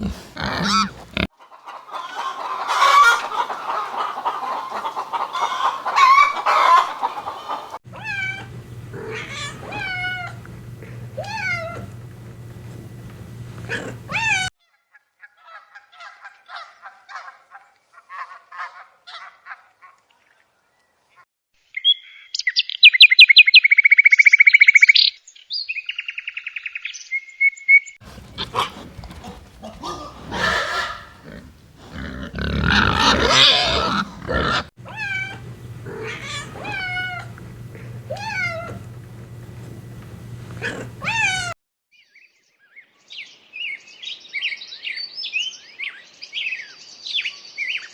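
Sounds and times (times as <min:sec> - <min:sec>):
animal cries and falling calls: 0:00.0 - 0:14.5, 0:28.0 - 0:41.6
loud rough animal cry: 0:00.0 - 0:14.5, 0:28.0 - 0:41.6
steady low hum: 0:07.9 - 0:14.5, 0:28.0 - 0:41.6.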